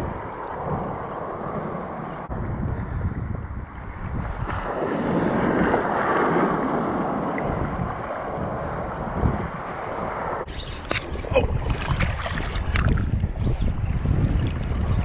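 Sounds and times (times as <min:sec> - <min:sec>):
wind buffeting microphone: 0:00.0 - 0:15.0
wave rushing in: 0:04.3 - 0:15.0.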